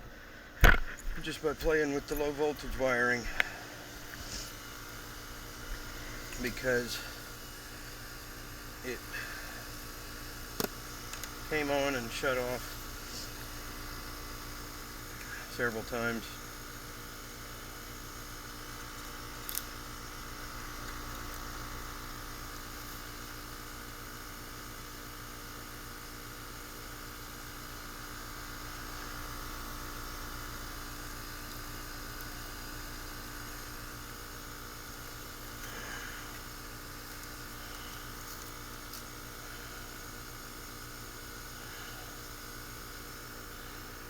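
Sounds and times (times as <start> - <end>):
fan rushing: 0.0 - 14.1, 32.2 - 42.2
heat pump humming: 0.0 - 44.0.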